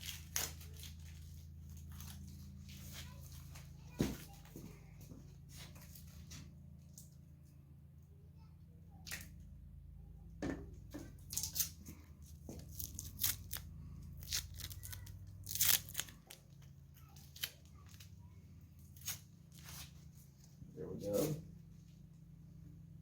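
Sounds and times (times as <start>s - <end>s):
masking tape ripping: 11.3s - 11.8s, 12.7s - 16.5s.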